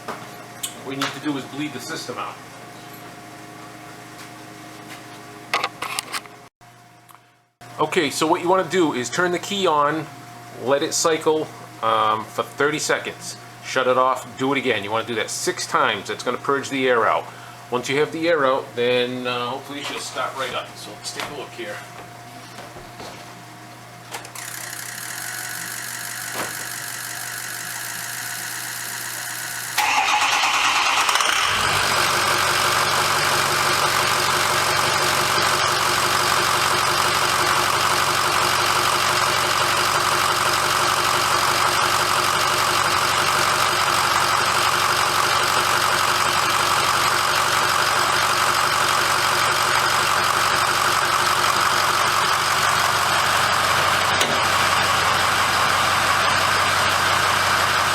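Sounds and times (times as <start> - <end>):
diesel engine cranking and idling: 24.4 - 57.9.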